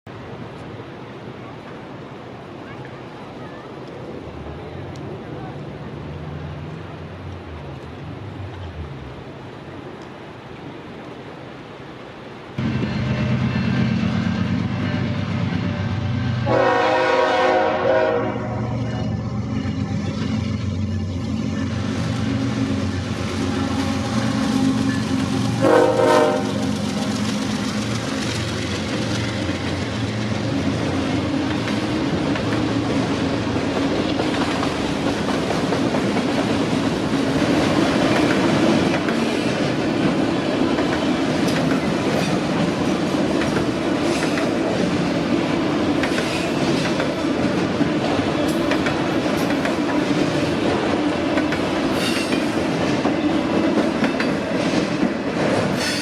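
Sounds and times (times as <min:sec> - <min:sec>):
diesel locomotives running: 0:00.1 - 0:56.0
train horn blast: 0:12.6 - 0:19.1, 0:23.4 - 0:27.2
train wheels clacking over rail joints: 0:19.8 - 0:56.0.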